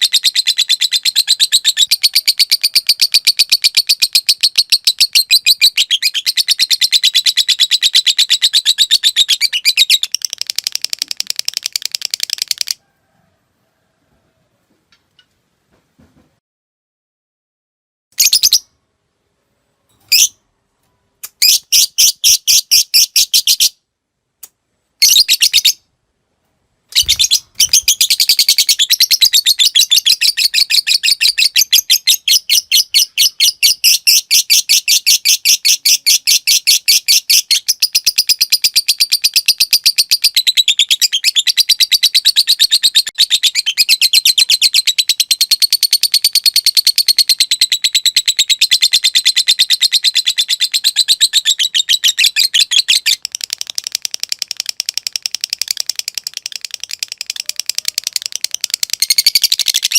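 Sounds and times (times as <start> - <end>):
lovebird chattering trill: 0.0 - 12.8, 26.9 - 59.9.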